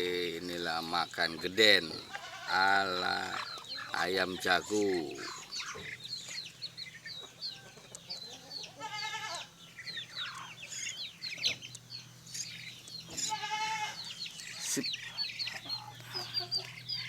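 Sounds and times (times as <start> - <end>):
chickens peeping: 0.0 - 17.0
chicken clucking call: 13.1 - 17.0.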